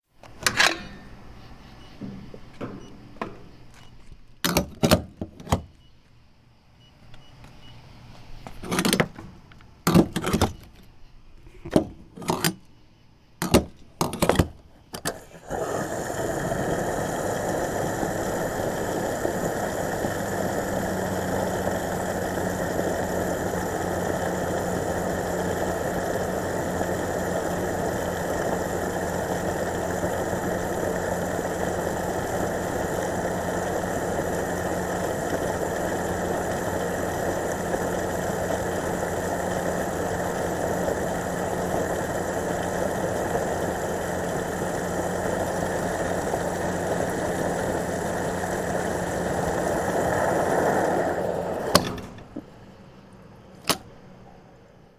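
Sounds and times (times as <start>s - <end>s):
gas pump clicks and clunks: 0.2s - 5.8s, 8.4s - 12.8s, 13.4s - 20.7s, 45.6s - 52.8s, 53.5s - 54.4s
fuel flowing with whirring: 15.0s - 54.0s.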